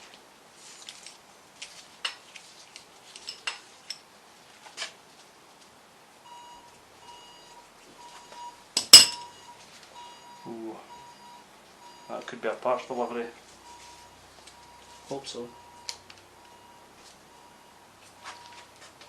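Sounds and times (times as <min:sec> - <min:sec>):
electronic beep: 0:09.2 - 0:12.3, 0:13.6 - 0:18.7.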